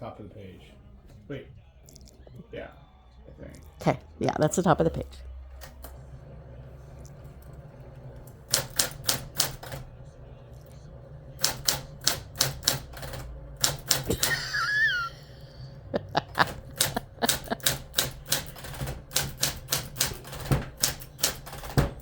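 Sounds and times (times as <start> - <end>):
manual typewriter clacking: 8.4 - 9.8, 11.4 - 14.6, 16.2 - 22.0.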